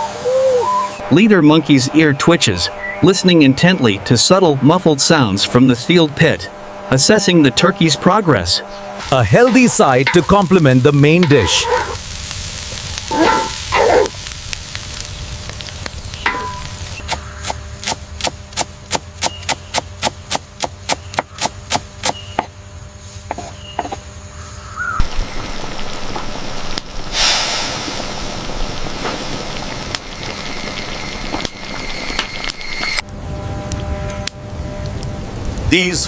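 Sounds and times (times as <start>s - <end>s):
steady hiss: 4.3s - 33.0s.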